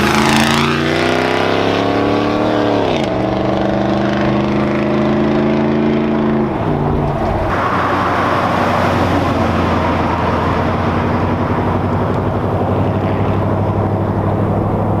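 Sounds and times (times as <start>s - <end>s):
engine revving then idling roughly: 0.0s - 6.4s.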